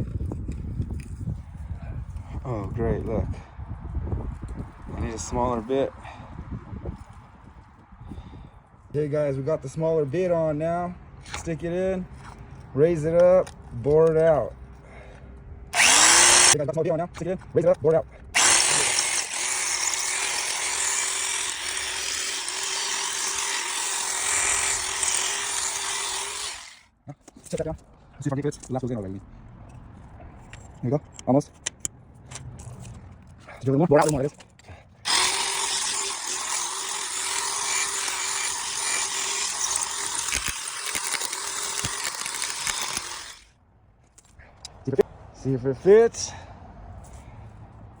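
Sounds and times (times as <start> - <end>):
electric drill boring into block: 15.8 - 16.6, 18.4 - 26.8, 35.1 - 43.4.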